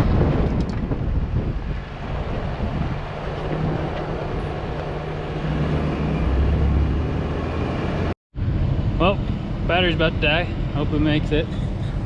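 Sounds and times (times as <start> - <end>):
wind buffeting microphone: 0.0 - 7.4
truck engine rumbling: 0.0 - 12.0.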